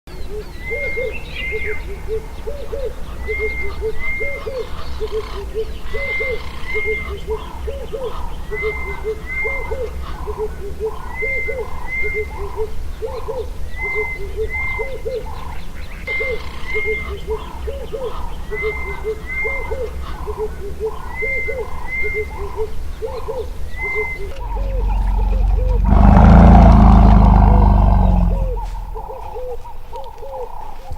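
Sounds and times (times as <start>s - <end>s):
frogs low calls: 16.4s - 30.6s.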